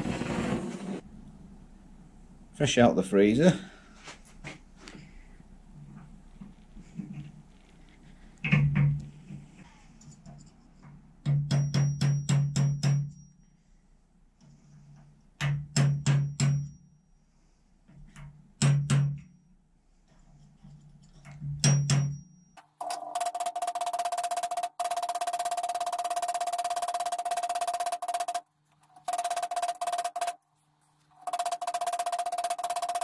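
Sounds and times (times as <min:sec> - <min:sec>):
hammer striking metal: 0:11.2 - 0:13.3, 0:15.4 - 0:16.9, 0:18.6 - 0:19.3, 0:21.6 - 0:28.4.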